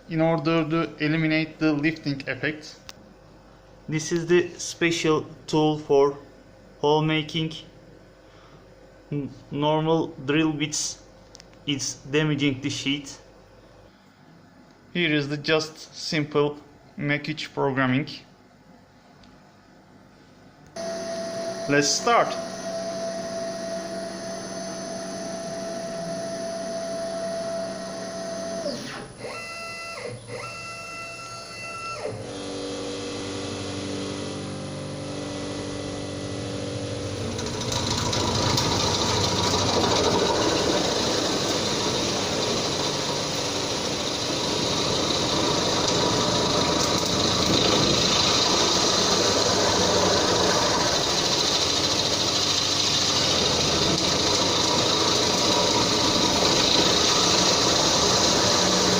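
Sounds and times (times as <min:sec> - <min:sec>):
cnc router motors whining: 0:20.8 - 0:58.9
drill bit boring sheet metal: 0:37.0 - 0:58.9.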